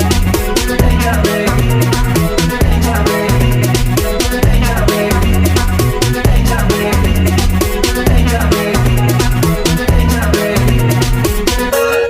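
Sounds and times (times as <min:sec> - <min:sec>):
electronic dance music: 0:00.0 - 0:12.0.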